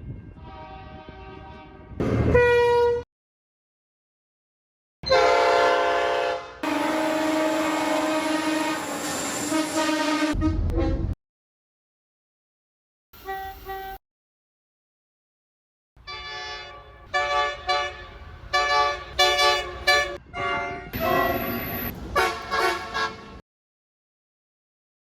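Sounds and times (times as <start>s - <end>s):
train horn blasts: 0.1s - 3.0s, 5.0s - 11.2s, 13.2s - 14.0s, 16.0s - 23.4s.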